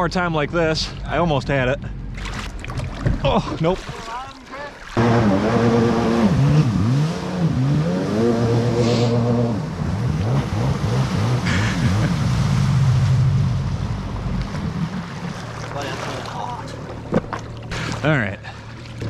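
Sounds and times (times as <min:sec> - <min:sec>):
jet ski engine revving: 0:04.9 - 0:19.0.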